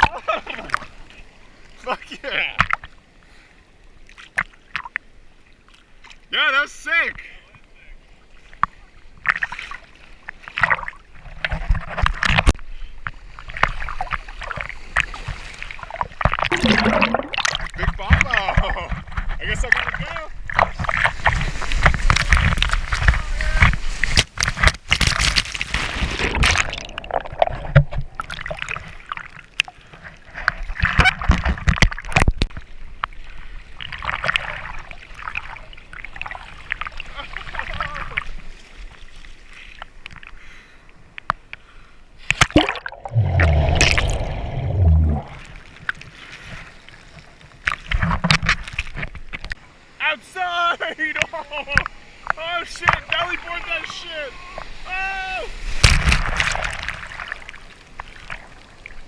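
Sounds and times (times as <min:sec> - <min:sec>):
seawater splashing: 0:00.0 - 0:41.1, 0:42.2 - 0:49.7, 0:50.8 - 0:59.0.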